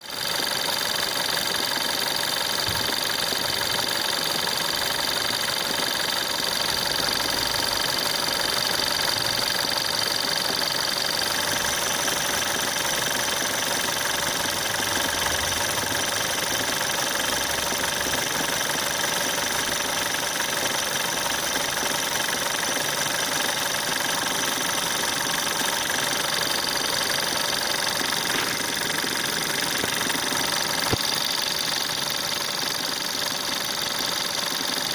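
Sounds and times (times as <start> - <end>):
car engine running: 22.5 - 34.8.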